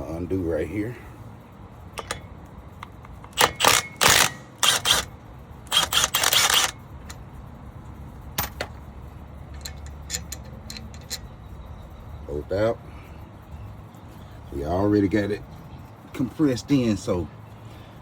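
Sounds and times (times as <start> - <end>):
ratchet wrench clicking: 1.7 - 17.2
metal clicks: 1.9 - 5.1, 5.7 - 11.4.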